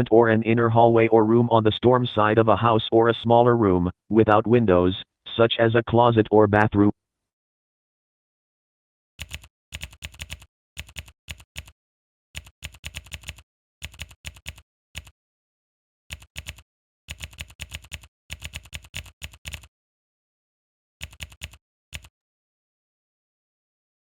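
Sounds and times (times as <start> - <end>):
keyboard typing: 9.2 - 11.8, 12.4 - 15.1, 16.1 - 19.7, 21.0 - 22.1.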